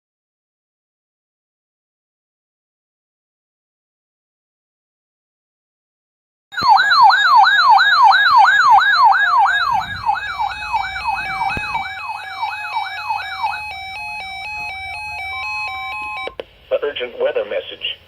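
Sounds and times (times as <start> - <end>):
electronic siren yelping: 6.6 - 16.4
hi-lo siren pattern: 6.6 - 16.4.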